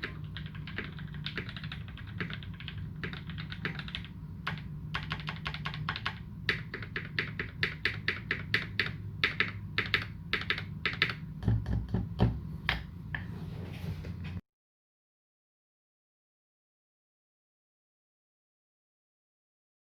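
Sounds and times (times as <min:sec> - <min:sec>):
mechanical keyboard typing: 0:00.0 - 0:11.2
low steady hum: 0:00.0 - 0:14.4.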